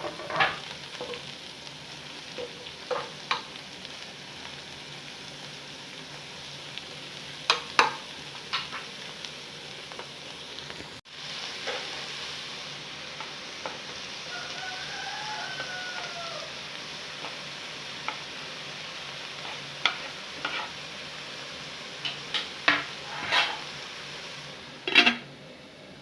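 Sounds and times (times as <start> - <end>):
spoon knocking and scraping pan: 0.0 - 1.3, 2.3 - 3.6, 7.5 - 8.9, 11.6 - 12.1, 17.2 - 17.4, 18.0 - 18.3, 19.4 - 20.8, 22.0 - 23.7, 24.9 - 25.3
food sizzling in a frying pan: 0.0 - 26.0.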